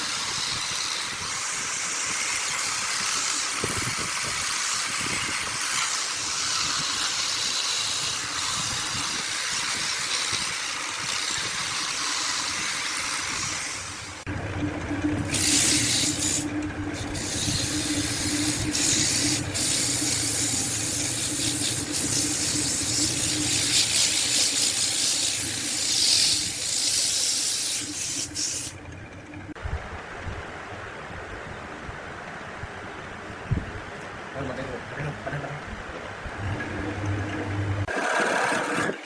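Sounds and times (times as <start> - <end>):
steady low hum: 13.8 - 37.9
loud hissing spray: 17.0 - 28.7.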